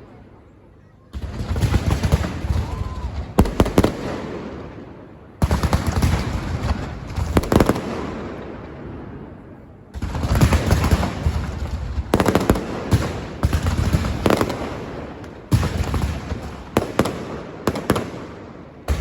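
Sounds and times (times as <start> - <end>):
firecrackers crackling: 1.2 - 8.9, 10.0 - 19.0
loud firecracker bangs: 10.0 - 19.0.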